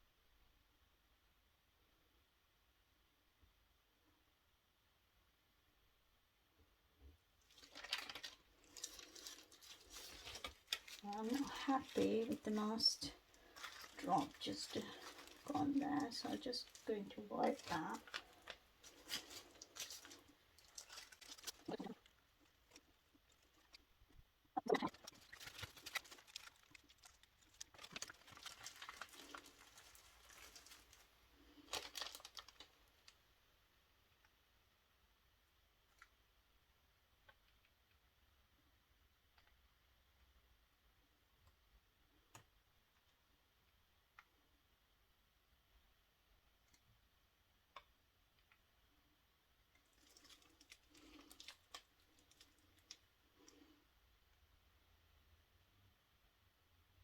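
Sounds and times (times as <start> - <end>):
plastic rustling: 7.4 - 33.2, 49.7 - 53.8.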